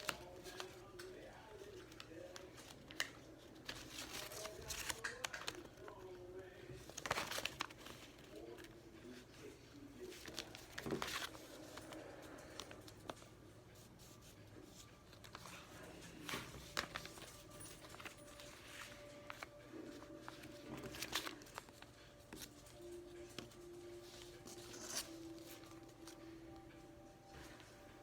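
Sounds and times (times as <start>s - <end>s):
rustling: 6.7s - 26.3s.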